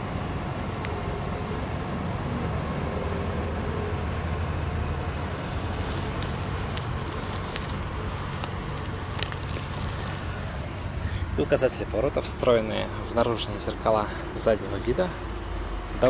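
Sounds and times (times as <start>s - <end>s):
car engine idling: 3.2s - 16.0s.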